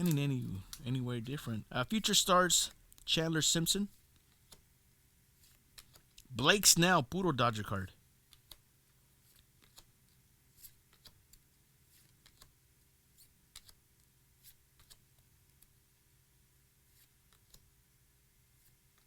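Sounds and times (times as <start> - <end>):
paper cards clicking and rustling: 9.3 - 9.9, 10.6 - 11.4, 12.0 - 12.6, 13.5 - 13.8, 14.4 - 15.1, 17.0 - 17.6.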